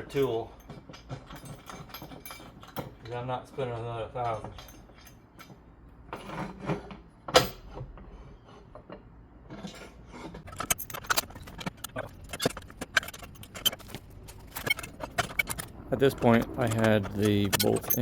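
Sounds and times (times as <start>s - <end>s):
metal tools clinking and clicking: 0.0s - 6.8s, 9.5s - 18.0s.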